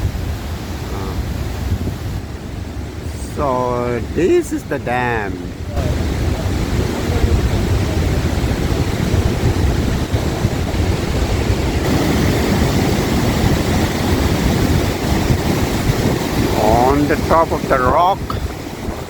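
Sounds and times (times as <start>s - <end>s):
wind buffeting microphone: 0.0s - 19.0s
river rapids over rocks: 4.2s - 19.0s.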